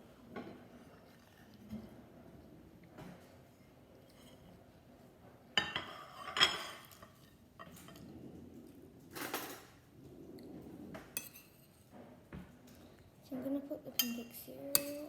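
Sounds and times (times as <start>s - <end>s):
utensils clinking on plates: 5.6s - 8.0s, 11.2s - 11.8s, 14.0s - 15.0s.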